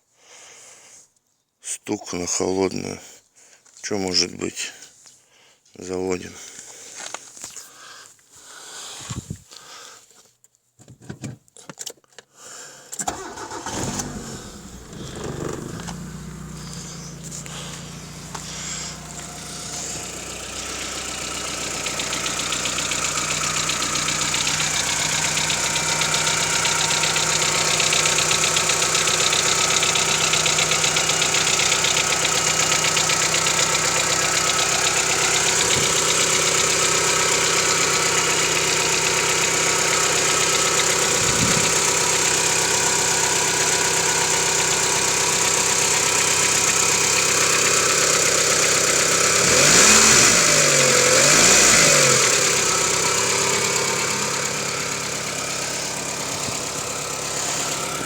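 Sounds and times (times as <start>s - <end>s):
engine idling with rapid knocking: 13.0s - 58.0s.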